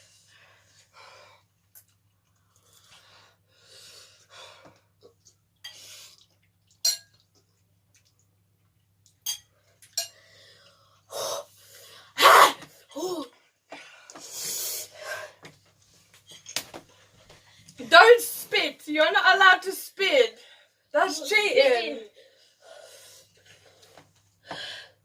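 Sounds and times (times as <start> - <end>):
person panting and gasping: 24.4 - 25.0.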